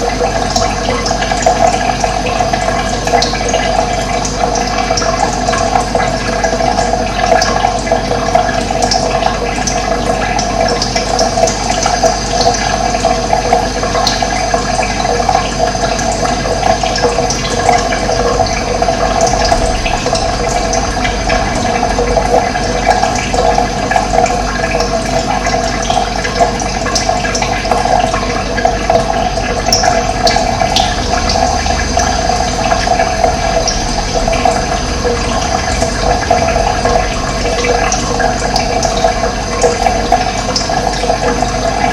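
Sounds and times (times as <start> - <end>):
running water rushing: 0.0 - 41.9.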